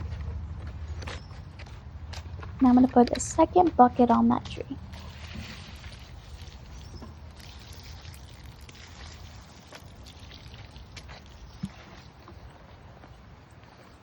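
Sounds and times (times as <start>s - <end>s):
water pouring onto ground: 4.9s - 12.2s.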